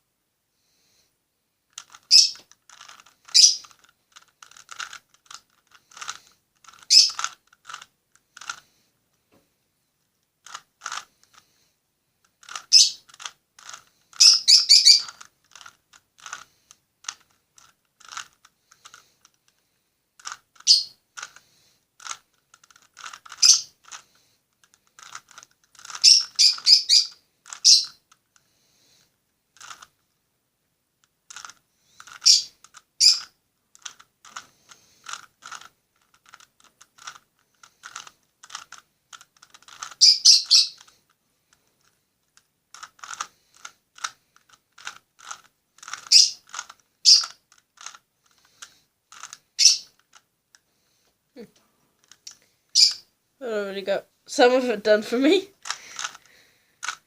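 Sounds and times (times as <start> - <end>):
puzzle cube layers clicking: 1.7 - 8.6, 10.4 - 11.4, 12.2 - 19.6, 20.2 - 28.5, 29.5 - 30.0, 31.0 - 50.7, 55.4 - 57.0.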